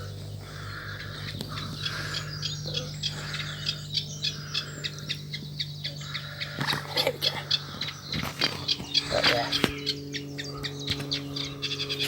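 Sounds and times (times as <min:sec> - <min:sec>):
small birds chirping: 0:00.0 - 0:12.0
steady low hum: 0:00.0 - 0:12.0.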